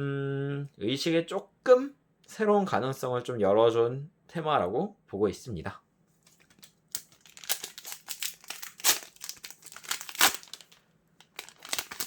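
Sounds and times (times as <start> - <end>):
foil wrapper crinkling: 6.3 - 12.0.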